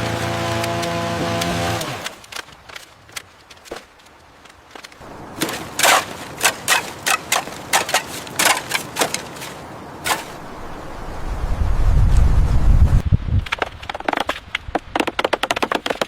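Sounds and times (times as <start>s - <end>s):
sharp knocks: 13.4s - 16.0s.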